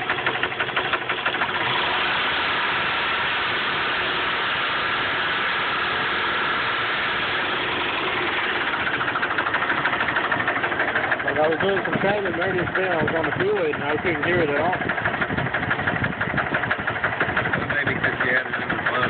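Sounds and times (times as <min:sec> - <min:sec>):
car engine revving: 0:00.0 - 0:14.8
engine rapid ticking: 0:00.0 - 0:19.0.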